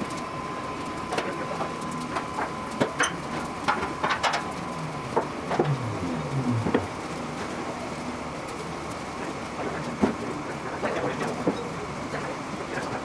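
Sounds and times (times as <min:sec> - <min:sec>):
faint steady tone: 0:04.5 - 0:07.0.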